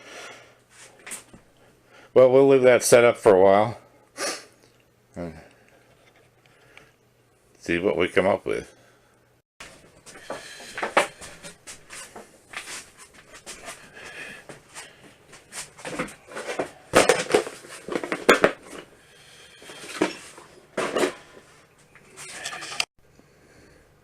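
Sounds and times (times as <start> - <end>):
hard objects clunking and rattling: 9.6 - 12.3, 15.6 - 21.5, 22.1 - 22.9.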